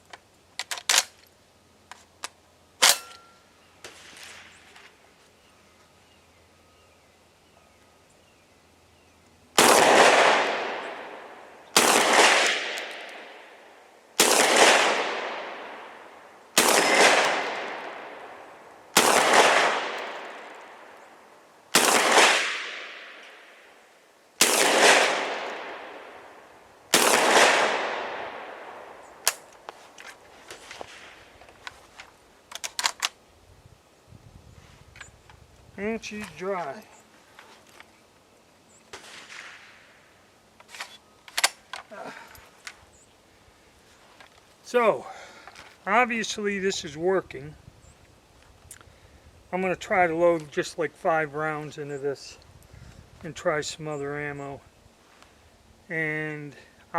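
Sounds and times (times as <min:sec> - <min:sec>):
shotgun shots with echo: 0:09.6 - 0:13.4, 0:14.2 - 0:15.9, 0:16.6 - 0:18.2, 0:19.0 - 0:20.0, 0:21.8 - 0:23.2, 0:24.4 - 0:26.1, 0:26.9 - 0:28.7.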